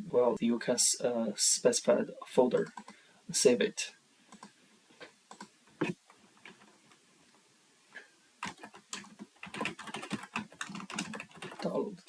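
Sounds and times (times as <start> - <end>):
computer mouse and keyboard clicks: 2.6 - 3.0, 4.3 - 4.5, 8.4 - 11.7.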